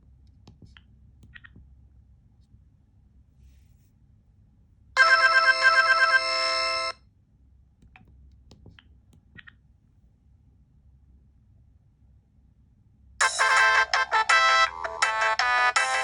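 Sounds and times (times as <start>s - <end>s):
polyphonic phone ringtone: 5.0s - 7.0s, 13.2s - 16.0s.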